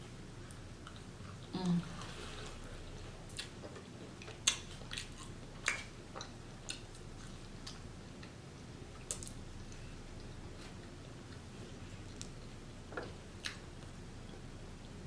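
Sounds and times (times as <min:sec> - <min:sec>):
faint steady hum: 0:00.0 - 0:15.0
chewing food: 0:00.4 - 0:15.0
wet mouth clicks and smacks: 0:04.2 - 0:06.9.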